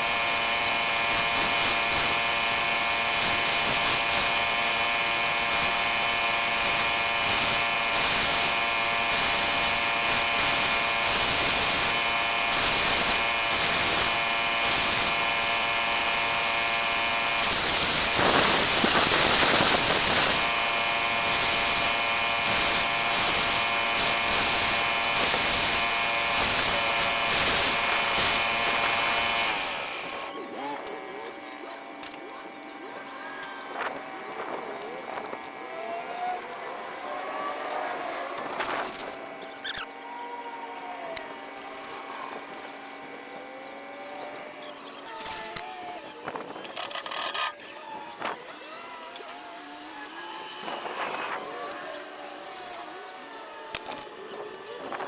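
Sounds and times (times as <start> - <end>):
small electric motor whining: 0.0 - 55.0.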